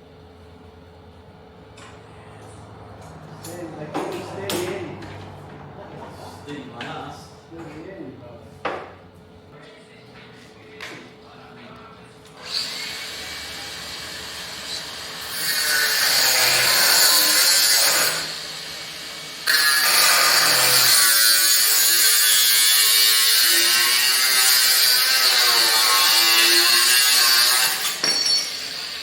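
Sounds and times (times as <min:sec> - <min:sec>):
welder arc buzzing and crackling: 0:12.4 - 0:29.0.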